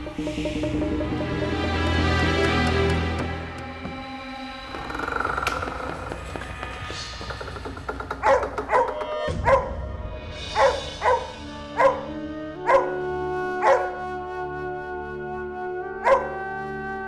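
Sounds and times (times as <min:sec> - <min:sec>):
background music with sustained notes: 0:00.0 - 0:17.0
dog barking: 0:08.2 - 0:09.8, 0:10.5 - 0:14.0, 0:16.0 - 0:16.5.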